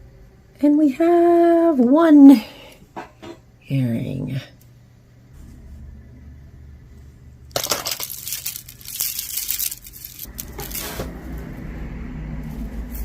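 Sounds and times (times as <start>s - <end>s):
jewelry beads clinking and rattling: 7.5s - 11.0s.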